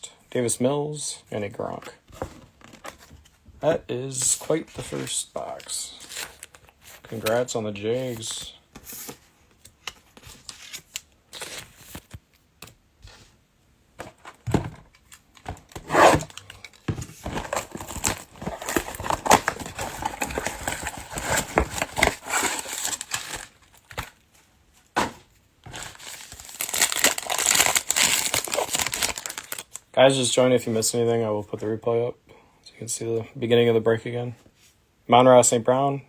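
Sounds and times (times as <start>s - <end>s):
wrappers crinkling: 17.3s - 23.9s, 25.7s - 29.8s
packaging tearing: 17.3s - 24.1s, 25.7s - 29.8s.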